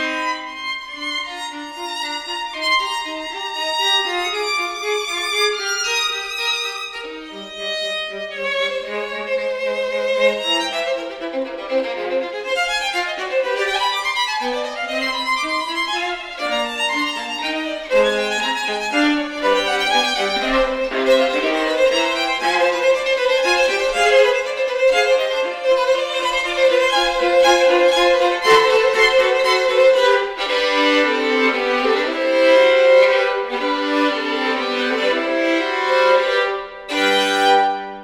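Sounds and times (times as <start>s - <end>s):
violin long notes: 0.0s - 38.0s
viola stepping line: 17.6s - 30.8s.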